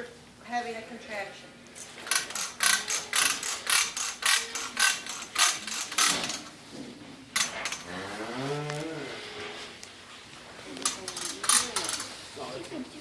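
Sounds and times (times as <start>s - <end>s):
ratchet clicking: 2.0s - 6.5s
cow groaning: 7.8s - 9.7s.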